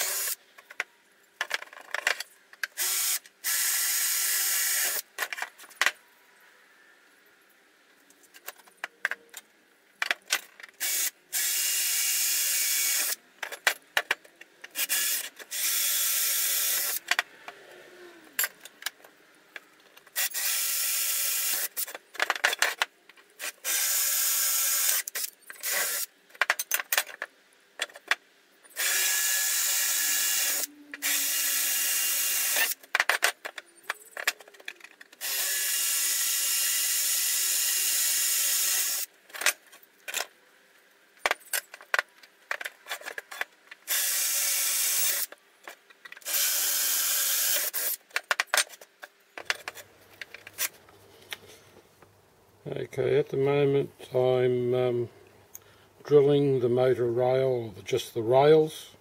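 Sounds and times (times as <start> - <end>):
electric drill boring into metal: 0.0 - 0.4, 2.8 - 5.0, 10.8 - 13.2, 14.8 - 17.0, 20.2 - 21.8, 23.4 - 26.1, 28.8 - 32.8, 35.2 - 39.1, 43.9 - 45.3, 46.2 - 48.0.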